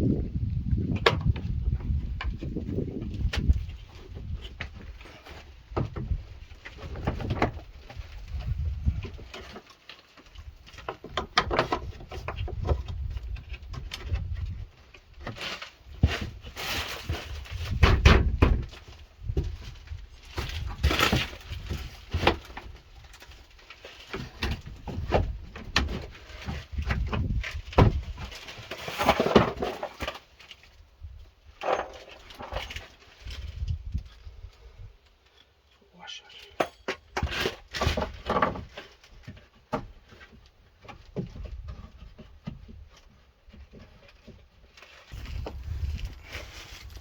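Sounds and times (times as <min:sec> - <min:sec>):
plastic parts knocking and rattling: 0:03.2 - 0:14.6, 0:31.6 - 0:33.8.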